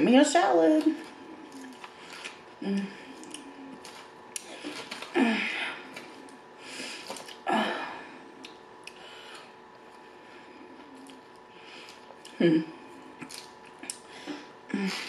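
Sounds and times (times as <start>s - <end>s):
person chewing food: 1.0s - 5.2s, 5.8s - 7.4s, 8.2s - 14.1s.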